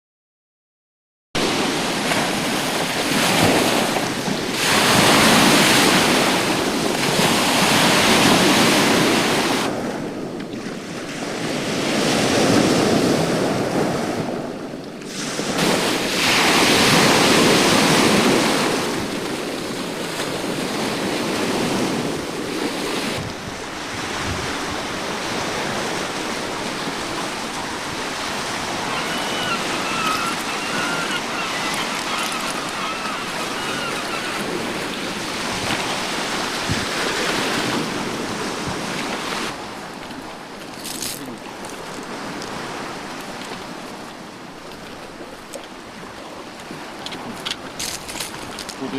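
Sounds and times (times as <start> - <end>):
sea surf washing onto shore: 1.4 - 48.9
wind buffeting microphone: 2.4 - 48.9.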